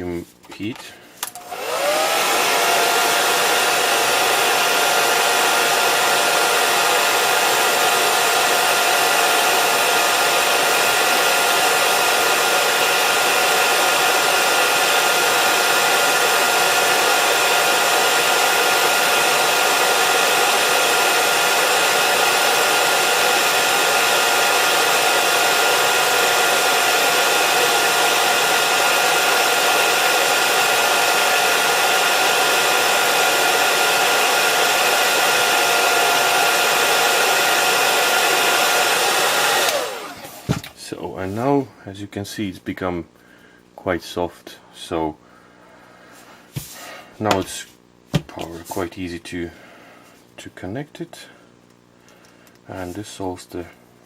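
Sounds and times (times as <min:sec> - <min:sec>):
hair dryer running: 0:01.2 - 0:40.8, 0:46.4 - 0:48.6.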